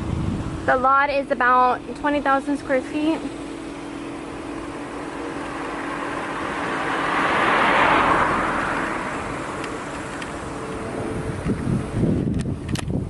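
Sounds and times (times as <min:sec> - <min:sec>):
car driving past: 0:03.9 - 0:11.5.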